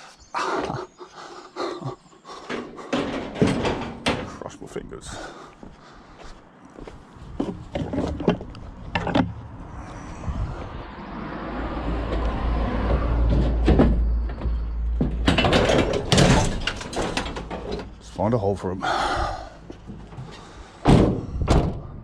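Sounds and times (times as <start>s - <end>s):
scrap metal clanking: 2.4s - 4.4s, 15.0s - 18.2s
vehicle passing by: 8.6s - 15.2s.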